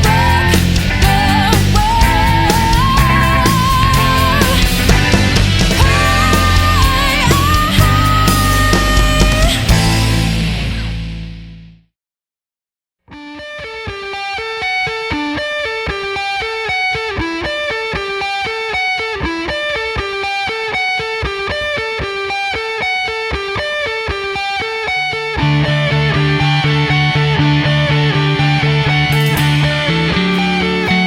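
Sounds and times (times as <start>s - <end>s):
heavy guitar with low bass notes: 0.0s - 11.9s, 13.1s - 31.0s
fast picked guitar figure: 13.1s - 31.0s.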